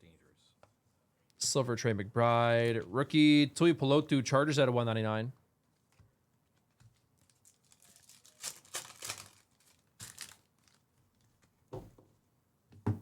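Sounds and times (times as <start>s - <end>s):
foil wrapper crinkling and tearing: 6.9s - 11.2s.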